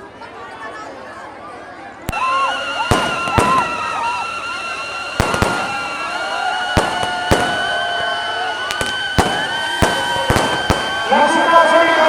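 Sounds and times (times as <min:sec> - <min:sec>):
high whistling tone: 0:02.1 - 0:11.5
firecrackers banging: 0:02.1 - 0:12.0.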